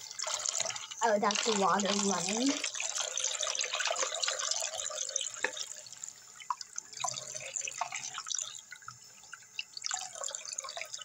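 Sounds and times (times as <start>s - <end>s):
tap water running into sink: 0.0s - 11.0s
water drips and splashes: 0.0s - 11.0s.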